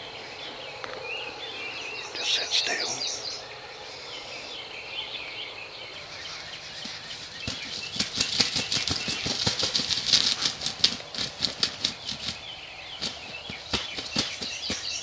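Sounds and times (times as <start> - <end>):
turkey wings flapping: 5.9 - 15.0.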